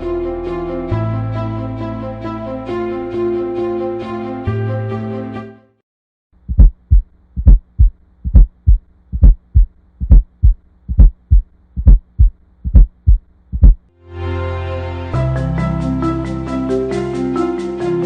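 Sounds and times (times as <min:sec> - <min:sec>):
background music: 0:00.0 - 0:05.8, 0:14.0 - 0:18.0
heartbeat thumps: 0:06.4 - 0:13.9.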